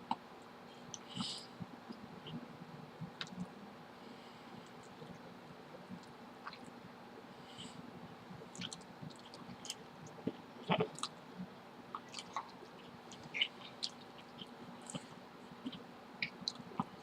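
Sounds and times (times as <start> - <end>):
person chewing food: 8.4 - 11.2, 11.9 - 17.0.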